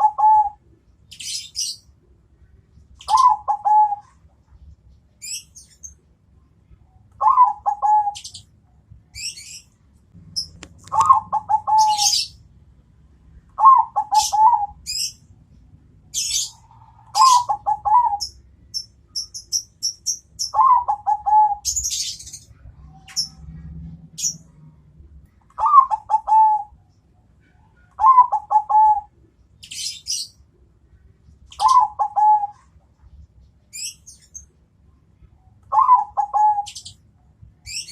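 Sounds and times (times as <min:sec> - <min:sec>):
doves cooing: 0:00.0 - 0:01.8, 0:03.0 - 0:04.3, 0:07.2 - 0:08.4, 0:10.2 - 0:12.4, 0:13.5 - 0:15.2, 0:16.1 - 0:18.4, 0:20.5 - 0:24.6, 0:25.5 - 0:26.8, 0:28.0 - 0:30.2, 0:31.5 - 0:32.8, 0:35.7 - 0:36.9
small birds chirping: 0:00.0 - 0:12.5, 0:13.3 - 0:37.9.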